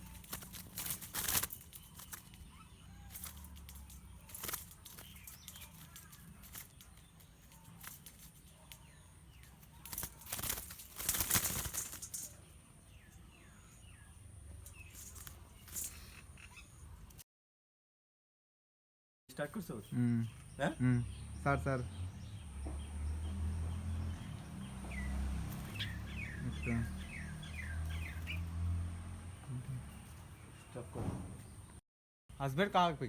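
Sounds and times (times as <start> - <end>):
bird flapping wings: 0.0 - 12.5, 14.8 - 16.0, 25.4 - 26.1
faint bird chirps: 0.0 - 17.2.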